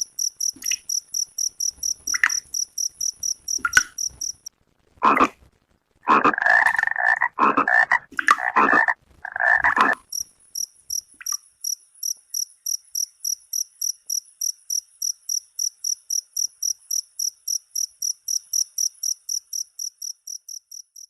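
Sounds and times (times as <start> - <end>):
cricket chirping: 0.0 - 4.5, 9.5 - 21.0.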